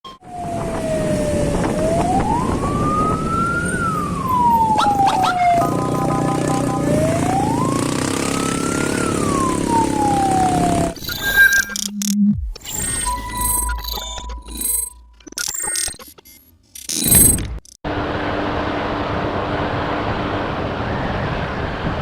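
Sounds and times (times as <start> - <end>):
emergency siren wailing: 0.1 - 11.0
road and wind noise: 0.2 - 11.0, 17.9 - 22.0
vehicle horn: 5.6 - 7.5.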